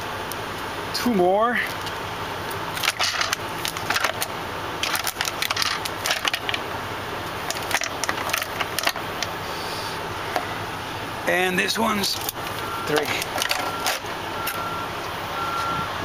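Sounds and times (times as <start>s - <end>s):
steady low hum: 0.0s - 16.0s
plastic bottles crinkling and knocking: 2.8s - 6.6s, 7.4s - 9.2s.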